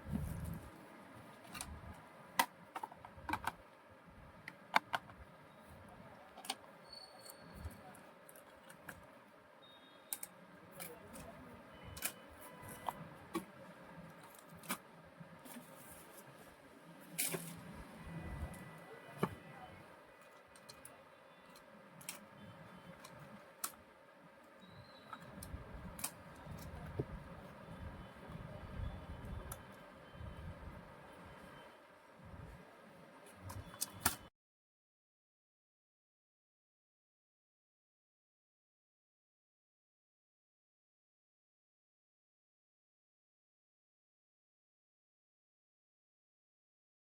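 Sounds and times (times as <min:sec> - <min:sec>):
plastic parts clicking and tapping: 0:01.4 - 0:03.7, 0:04.4 - 0:05.3.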